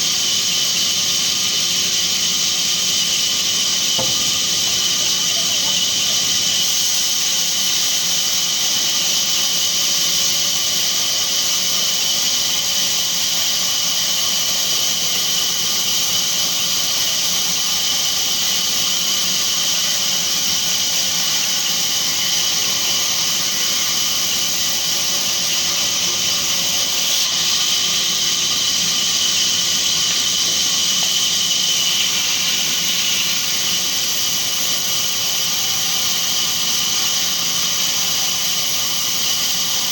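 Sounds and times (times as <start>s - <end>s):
sawmill saw cutting timber: 0.0s - 39.9s.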